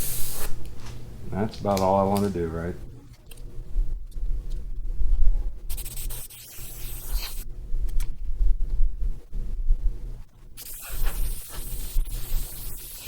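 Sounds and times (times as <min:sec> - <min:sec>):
airbrush spray hiss: 0:00.0 - 0:00.6, 0:05.7 - 0:07.4, 0:10.6 - 0:13.0
rubbing and handling noises: 0:00.0 - 0:05.3.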